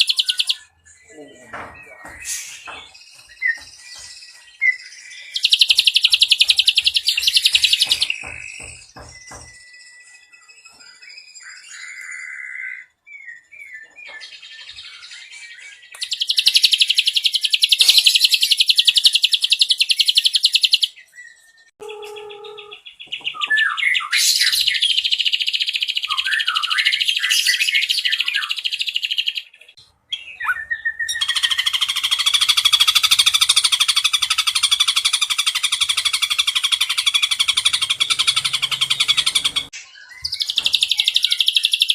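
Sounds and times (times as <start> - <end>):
bird rapid trills: 31.2 - 39.7.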